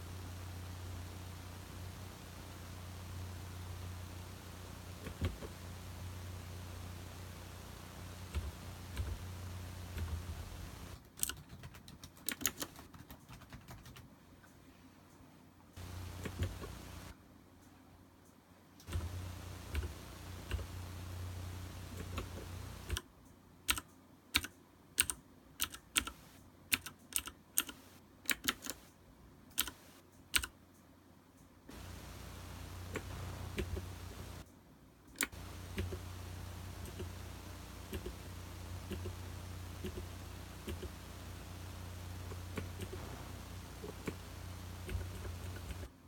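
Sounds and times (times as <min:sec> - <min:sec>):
keyboard keys clicking: 0:10.0 - 0:14.1, 0:23.7 - 0:28.9, 0:29.5 - 0:30.5
low hum: 0:31.7 - 0:34.4, 0:35.3 - 0:45.9.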